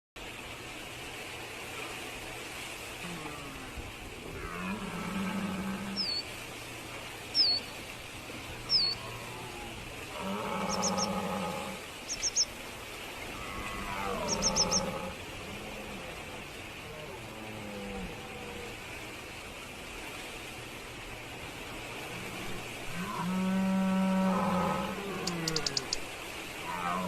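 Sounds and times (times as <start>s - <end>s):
faint hiss: 0.2s - 27.0s
bird chirping: 6.0s - 6.2s, 7.4s - 7.7s, 8.7s - 9.0s, 25.2s - 26.0s.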